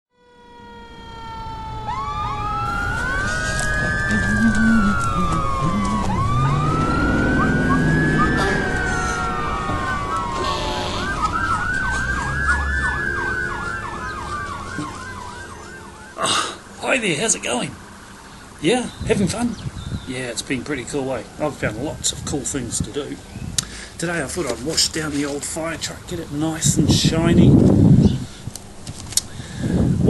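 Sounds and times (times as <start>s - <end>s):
siren fast yelp: 0.1s - 20.0s
emergency sirens wailing: 0.1s - 23.3s.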